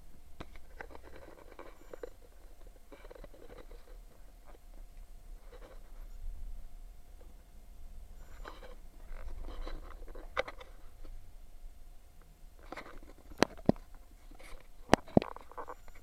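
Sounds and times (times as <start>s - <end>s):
handling scraping and rustling: 0.4s - 6.2s, 8.2s - 11.2s, 12.6s - 16.0s.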